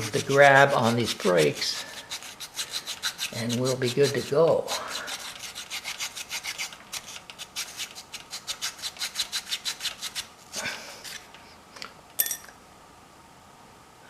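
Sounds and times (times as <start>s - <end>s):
sandpaper scraping brake pads: 0.0s - 10.3s.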